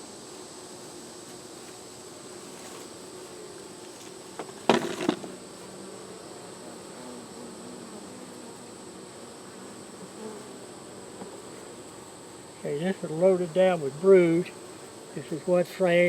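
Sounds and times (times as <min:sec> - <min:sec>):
honey bees buzzing: 0:00.0 - 0:16.0
sharp knocks: 0:04.4 - 0:05.3.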